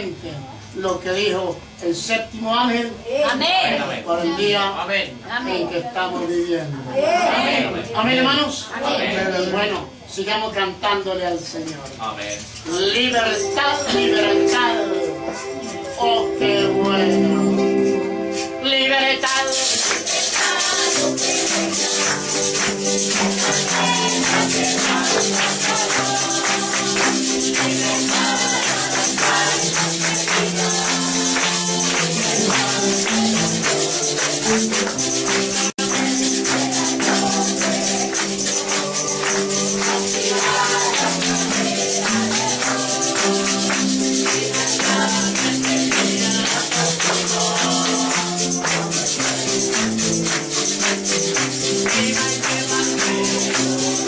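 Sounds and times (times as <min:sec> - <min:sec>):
people singing a praise song: 0:07.0 - 0:09.4, 0:13.2 - 0:17.5, 0:18.7 - 0:54.0
tambourine shaking: 0:12.2 - 0:16.0, 0:19.2 - 0:54.0.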